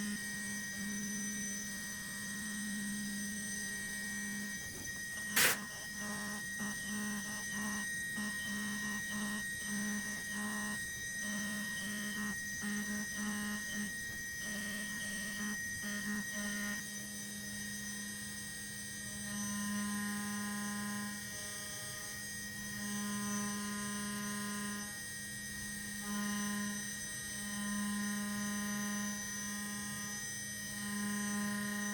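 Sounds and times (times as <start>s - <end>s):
milling spindle whine: 0.0s - 18.4s, 25.7s - 31.9s.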